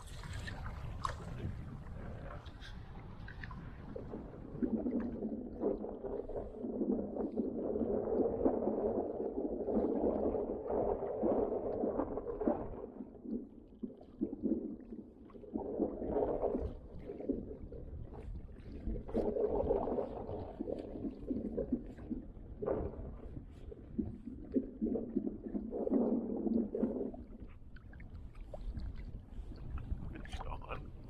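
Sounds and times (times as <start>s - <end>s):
water slapping against kayak hull: 0.0s - 2.6s
strong wind: 28.8s - 31.0s.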